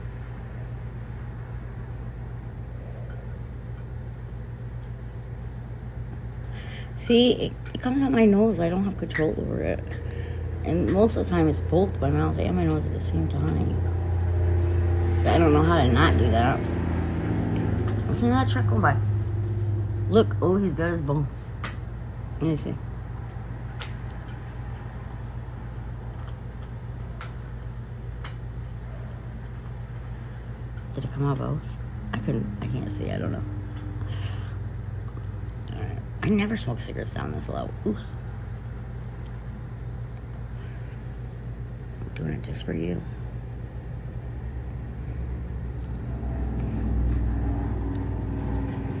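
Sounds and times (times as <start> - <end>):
low mechanical hum: 0.0 - 49.0
vehicle engine passing by: 9.8 - 21.1, 31.0 - 35.5, 45.0 - 49.0.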